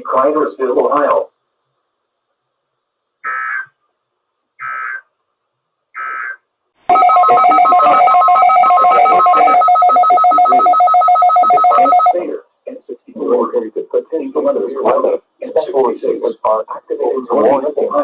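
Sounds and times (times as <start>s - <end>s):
digital data bursts: 6.9s - 12.2s
steady electronic alert tone: 6.9s - 12.2s.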